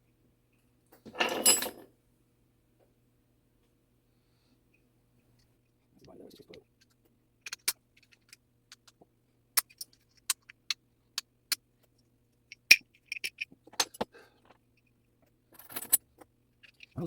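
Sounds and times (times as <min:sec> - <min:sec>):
small metallic clicks and taps: 0:05.3 - 0:17.0.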